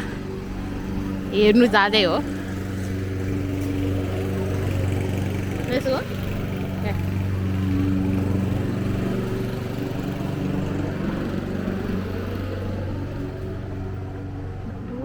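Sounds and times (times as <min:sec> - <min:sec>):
motor engine running: 0:00.0 - 0:15.0.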